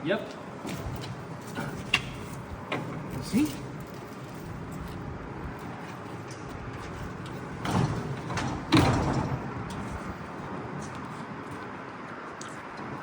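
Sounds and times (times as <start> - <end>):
heavy clunks: 6.8 - 10.0.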